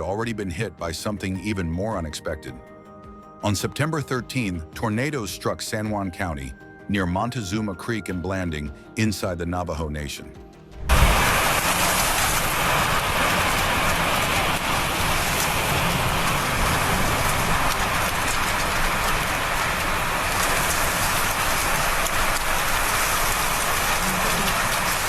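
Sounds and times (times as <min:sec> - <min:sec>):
low rumble: 0:10.7 - 0:19.2
heavy rain pouring: 0:10.8 - 0:25.0.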